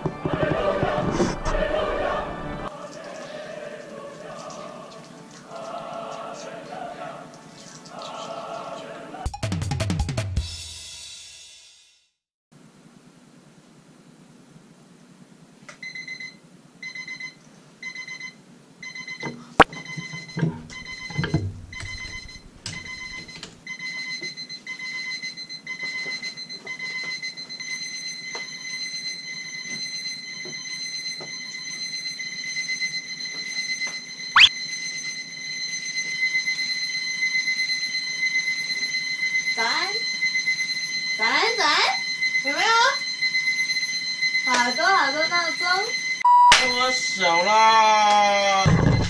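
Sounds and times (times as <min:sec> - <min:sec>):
electronic alarm clocks beeping: 0:15.8 - 0:47.6.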